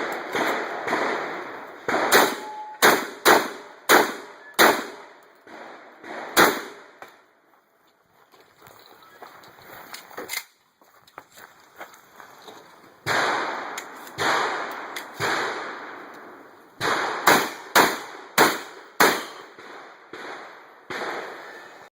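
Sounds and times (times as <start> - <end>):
shotgun shots with echo: 0.0 - 7.0, 13.0 - 16.0, 16.8 - 21.6.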